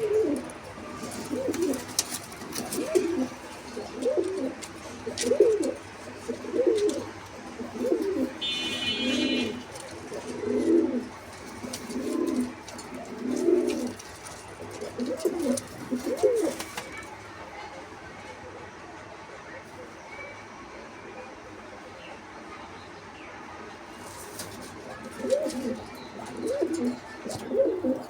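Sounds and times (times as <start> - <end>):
pigeons cooing: 0.0 - 17.1, 24.0 - 28.0.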